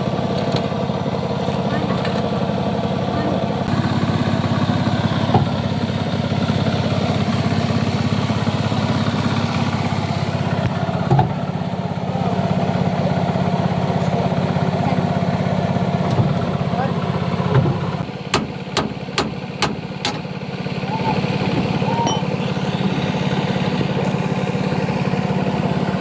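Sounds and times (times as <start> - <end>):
engine idling: 0.0 - 26.0.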